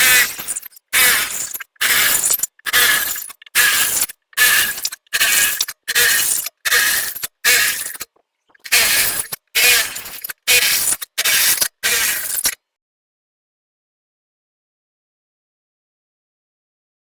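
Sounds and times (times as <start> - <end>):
drill cutting into steel: 0.0 - 12.6.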